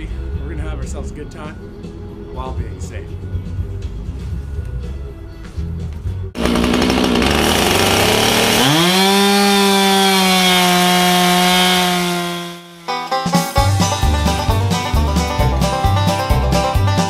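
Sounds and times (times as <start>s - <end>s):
chainsaw revving: 6.4s - 13.0s
banjo music: 8.7s - 17.0s.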